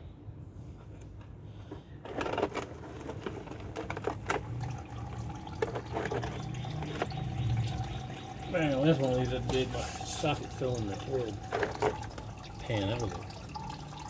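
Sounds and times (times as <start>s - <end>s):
oil pouring and spattering: 2.4s - 14.0s.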